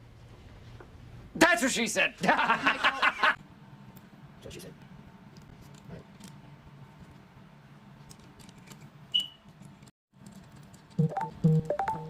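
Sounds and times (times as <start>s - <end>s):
faint clicks of small parts: 8.0s - 8.9s
sharp high squeak: 9.1s - 9.5s.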